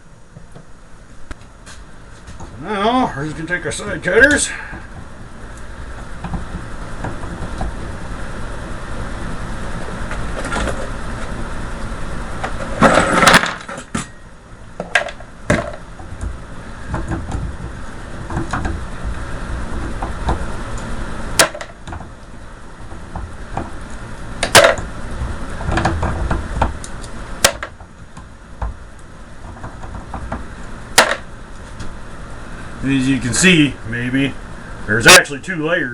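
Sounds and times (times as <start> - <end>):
steady low hum: 0.0 - 35.9.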